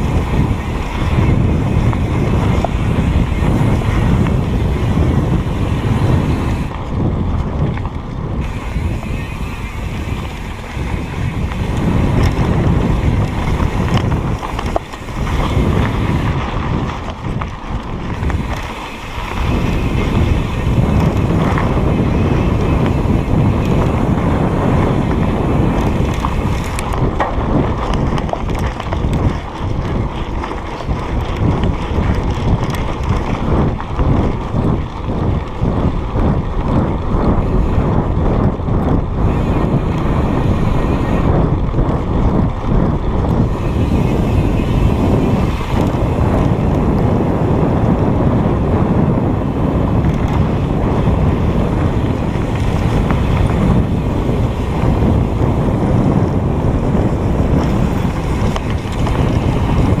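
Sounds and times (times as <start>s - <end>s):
wind buffeting microphone: 0.0s - 60.0s
knocks and rattles from rough ground: 6.4s - 37.5s.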